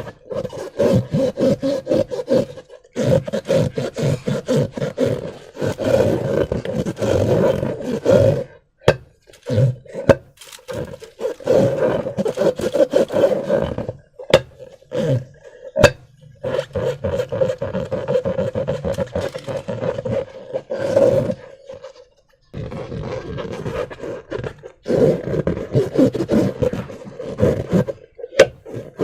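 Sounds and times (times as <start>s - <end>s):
rubber balloon squeaking: 0.0s - 29.0s
slime squelching: 9.0s - 20.7s.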